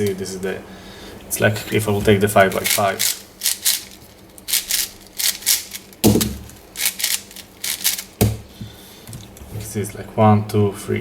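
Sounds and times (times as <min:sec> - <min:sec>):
plastic puzzle cube clicking: 0:02.5 - 0:03.9, 0:04.5 - 0:08.1
heavier knock: 0:06.0 - 0:06.5, 0:08.2 - 0:08.5.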